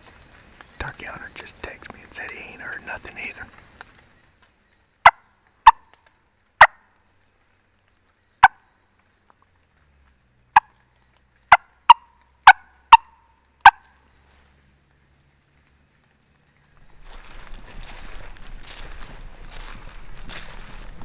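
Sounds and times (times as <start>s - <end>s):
turkey call clucks: 5.0s - 5.9s, 8.4s - 8.7s, 10.6s - 10.8s, 11.5s - 13.9s.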